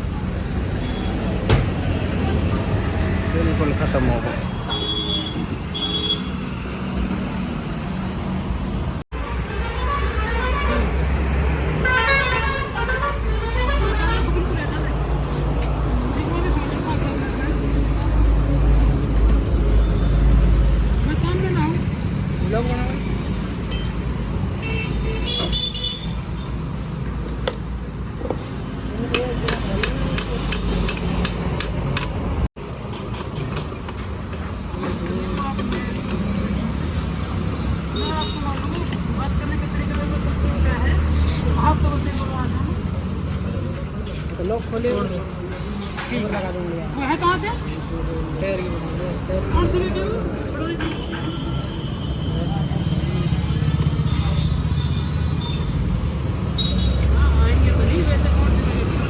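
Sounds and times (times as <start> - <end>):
vehicle horns honking: 4.6 - 6.4, 11.8 - 14.6, 24.6 - 26.2, 50.8 - 55.8
vehicle engines running: 47.5 - 59.0.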